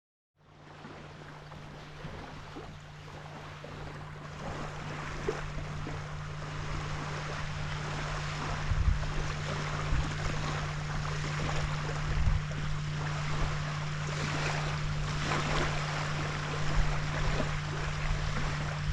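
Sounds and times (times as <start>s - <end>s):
constant low hum: 0.4s - 18.9s
waves washing on a beach: 0.6s - 18.9s
dull low thumps: 8.5s - 13.8s.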